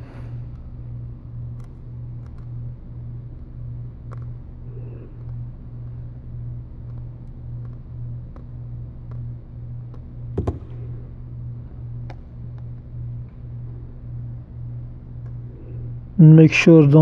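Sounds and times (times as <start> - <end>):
low pulsing hum: 0.0 - 17.0
sharp knock: 10.4 - 10.8.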